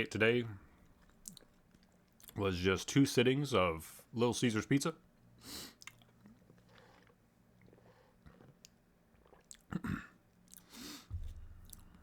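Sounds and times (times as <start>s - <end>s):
man chewing food: 0.9s - 2.4s, 5.7s - 12.0s
breath: 10.6s - 11.2s.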